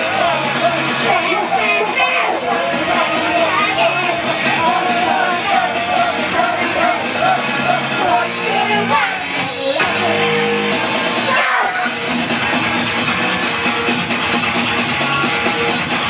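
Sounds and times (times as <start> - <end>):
group singing pop song: 0.0 - 12.4
loud band music: 0.0 - 16.0.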